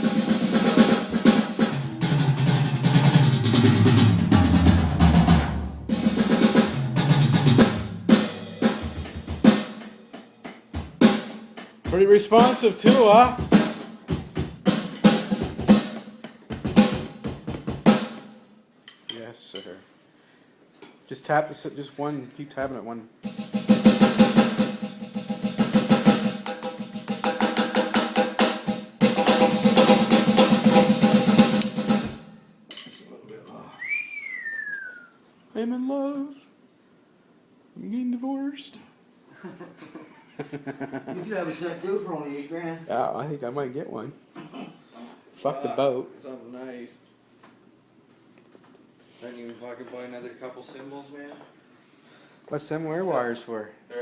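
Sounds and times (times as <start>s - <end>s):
electronic drum kit: 0.0s - 18.5s, 23.2s - 32.5s.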